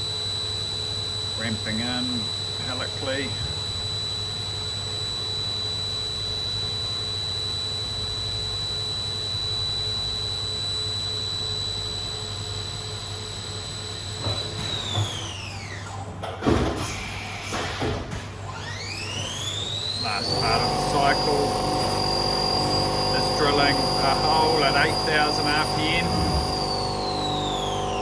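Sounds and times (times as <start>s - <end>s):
machine spindle whining: 18.5s - 28.0s
low machine hum: 19.3s - 28.0s.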